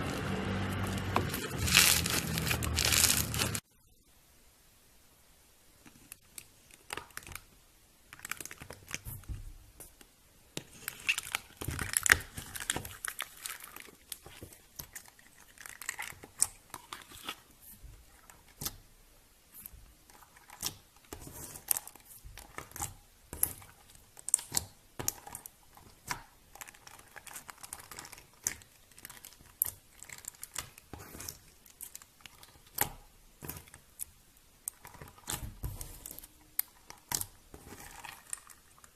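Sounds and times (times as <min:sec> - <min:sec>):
slime crackling and popping: 0:00.0 - 0:03.6, 0:10.7 - 0:17.4, 0:19.6 - 0:38.9.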